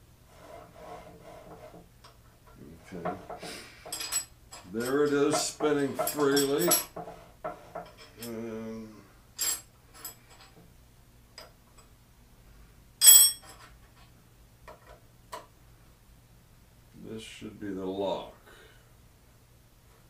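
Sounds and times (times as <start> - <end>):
ringing metal clink: 13.0 - 13.6.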